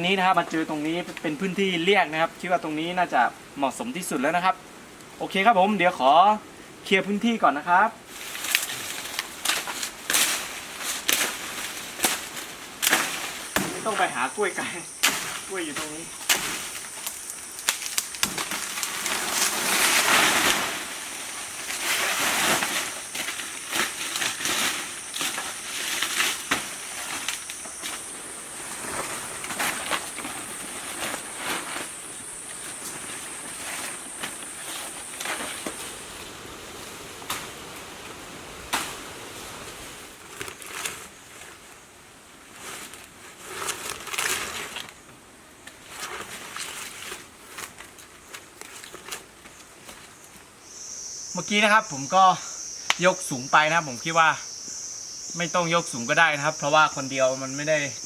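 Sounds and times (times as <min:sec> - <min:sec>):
leaves rustling: 0:00.0 - 0:58.0
high insect drone: 0:07.2 - 0:41.8, 0:49.9 - 0:58.0
vegetation crunching: 0:08.1 - 0:37.9, 0:39.7 - 0:41.6, 0:42.5 - 0:45.0
sticks snapping: 0:15.0 - 0:19.6.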